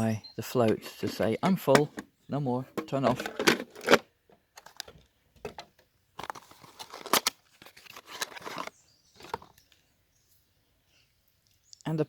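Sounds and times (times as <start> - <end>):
plastic packaging rustling: 6.2 - 9.6.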